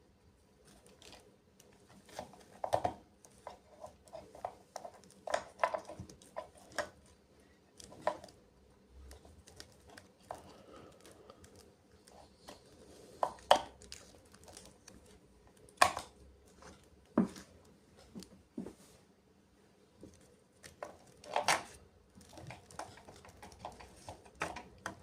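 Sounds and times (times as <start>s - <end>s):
clicks and taps of handled objects: 1.0s - 7.2s, 20.0s - 25.0s.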